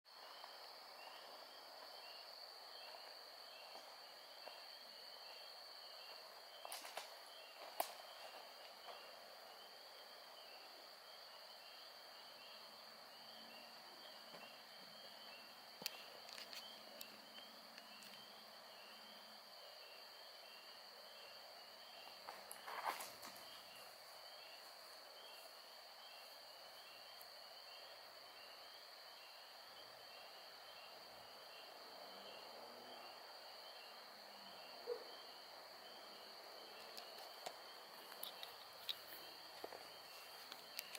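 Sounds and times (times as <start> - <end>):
frogs peeping: 33.0 - 40.9.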